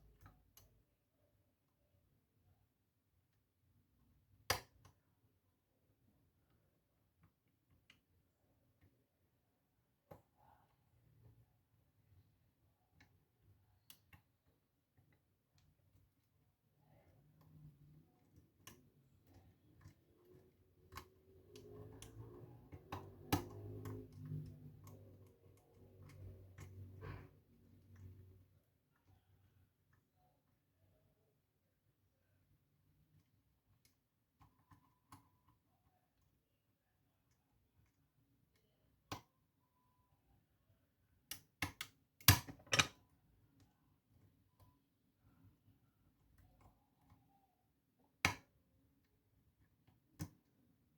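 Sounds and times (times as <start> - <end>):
lock pick clicking in lock: 41.3 - 43.0.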